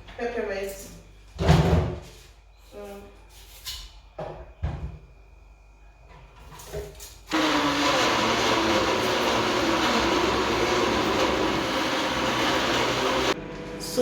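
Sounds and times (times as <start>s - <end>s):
electric blender running: 7.3s - 13.4s.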